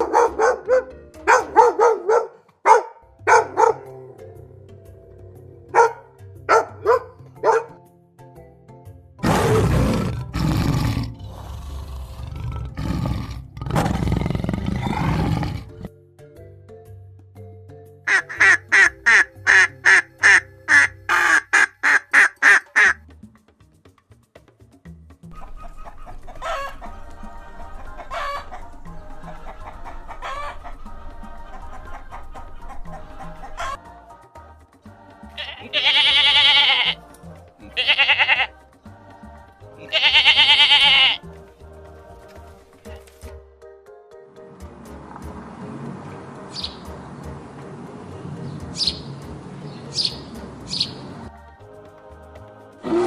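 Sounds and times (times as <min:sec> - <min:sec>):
dog barking: 0:00.0 - 0:04.0, 0:05.7 - 0:07.8
soft background music: 0:00.0 - 0:53.0
lion roaring: 0:09.2 - 0:15.9
chicken squawking: 0:18.1 - 0:23.0, 0:25.3 - 0:27.0, 0:27.8 - 0:28.7, 0:29.3 - 0:30.8, 0:31.9 - 0:33.8, 0:35.4 - 0:37.0, 0:39.8 - 0:41.2
chicken clucking: 0:25.4 - 0:33.8.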